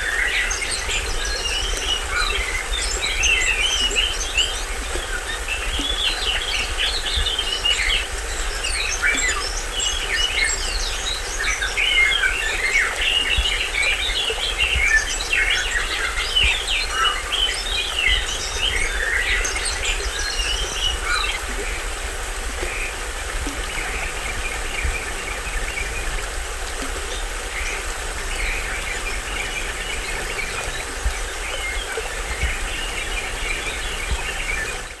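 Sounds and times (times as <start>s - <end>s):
birds chirping and calling: 0.0s - 22.0s, 22.6s - 35.0s
small waterfall rushing: 0.0s - 35.0s.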